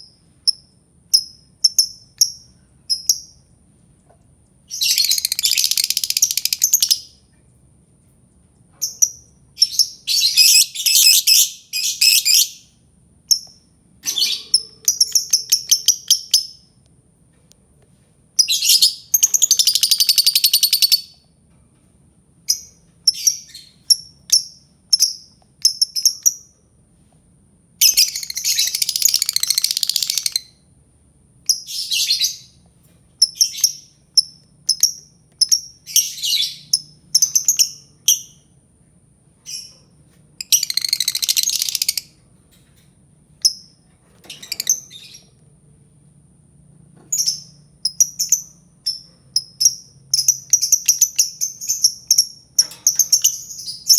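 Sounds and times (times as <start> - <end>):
lovebird chirping: 4.7 - 7.2, 8.8 - 16.7, 18.4 - 21.2, 22.5 - 26.5, 27.8 - 30.6, 31.5 - 32.6, 33.2 - 38.5, 39.4 - 42.2, 43.4 - 45.4, 47.1 - 53.9.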